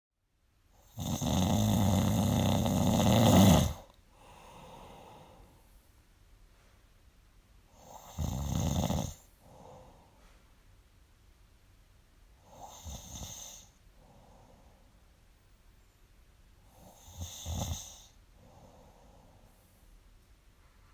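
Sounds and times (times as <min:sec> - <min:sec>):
person snoring: 0:00.8 - 0:05.6, 0:07.8 - 0:10.0, 0:12.4 - 0:14.5, 0:16.8 - 0:19.3
soft breath: 0:03.8 - 0:06.9, 0:09.2 - 0:10.7, 0:13.4 - 0:15.2, 0:17.8 - 0:20.9.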